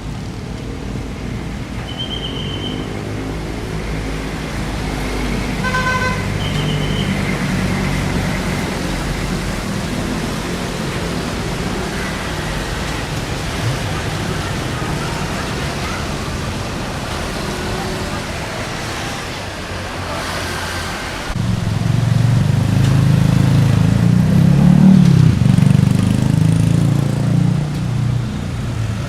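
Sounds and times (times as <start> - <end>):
traffic rumble: 0.0 - 29.0
car horn: 5.6 - 7.4.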